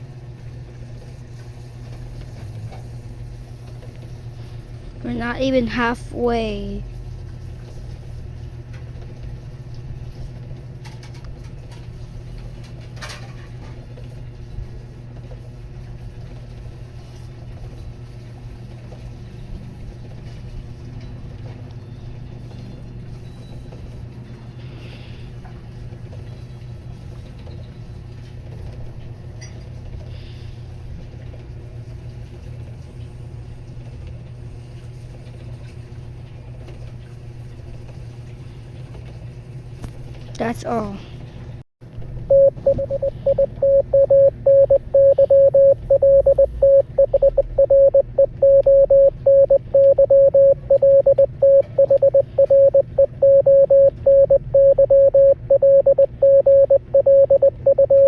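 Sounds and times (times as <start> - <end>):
steady low hum: 40.4 - 58.0.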